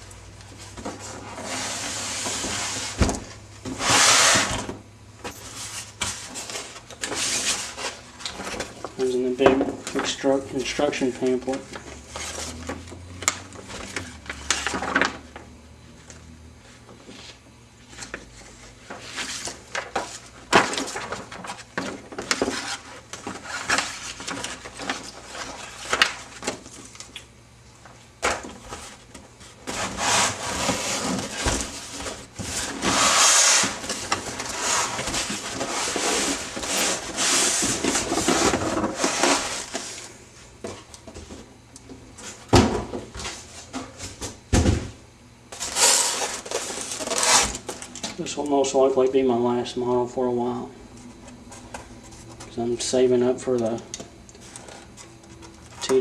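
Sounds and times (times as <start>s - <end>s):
polystyrene rubbing and scraping: 1.2s - 3.0s, 3.7s - 4.6s, 5.3s - 8.0s, 29.7s - 40.1s, 45.6s - 47.7s.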